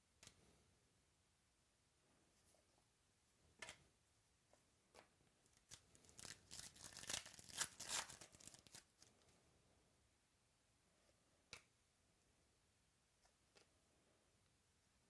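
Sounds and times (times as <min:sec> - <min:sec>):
card pack wrapper tearing: 0:05.6 - 0:09.1.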